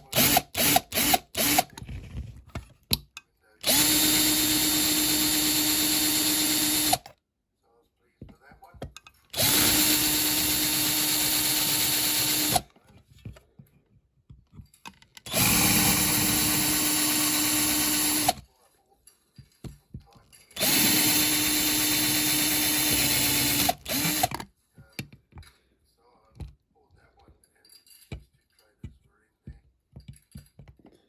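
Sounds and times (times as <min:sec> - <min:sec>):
small electric drill running: 0:00.0 - 0:01.8, 0:03.6 - 0:07.1, 0:09.3 - 0:12.6, 0:15.3 - 0:18.4, 0:20.6 - 0:24.4.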